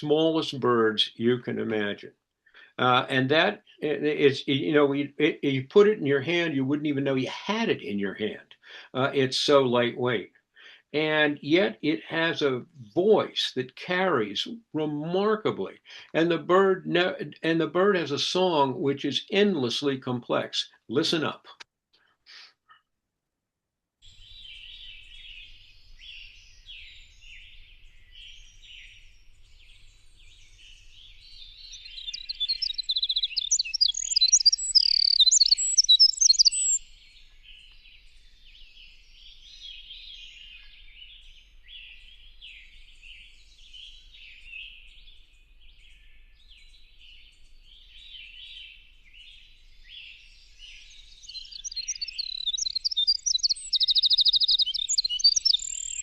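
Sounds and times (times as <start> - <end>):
wren singing trills: 24.1 - 56.0
soft rapid twittering: 31.6 - 36.8, 51.2 - 56.0.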